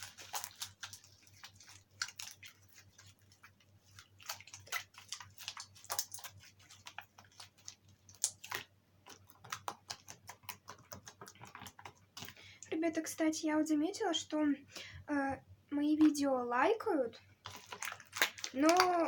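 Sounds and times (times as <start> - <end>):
slime being kneaded by hand: 0.0 - 12.9, 15.8 - 19.0.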